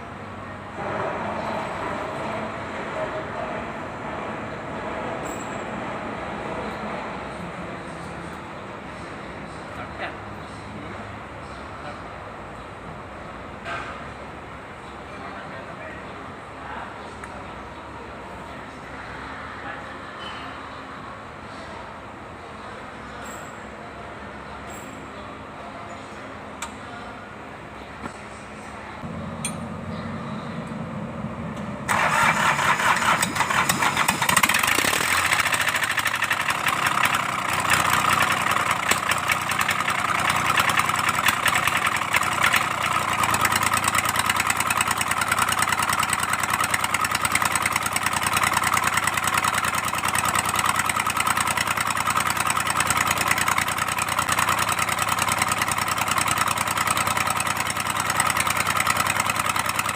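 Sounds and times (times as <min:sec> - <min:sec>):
diesel engine running: 0:00.0 - 0:15.0, 0:27.4 - 0:59.9
starter motor cranking: 0:31.9 - 0:59.9.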